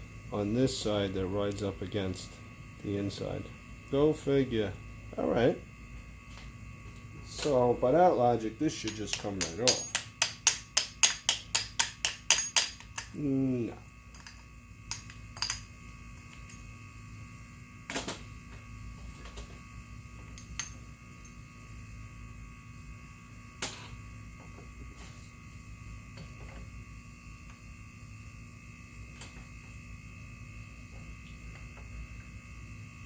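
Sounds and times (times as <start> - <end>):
electrical hum: 0.0 - 33.0
tools clicking on metal: 8.8 - 13.2.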